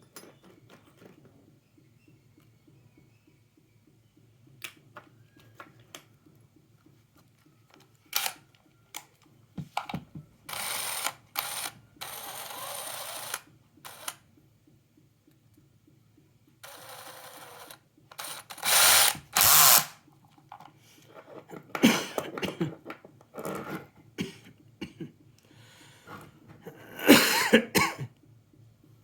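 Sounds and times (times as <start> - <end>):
cordless drill running: 10.5 - 14.1, 16.6 - 20.0.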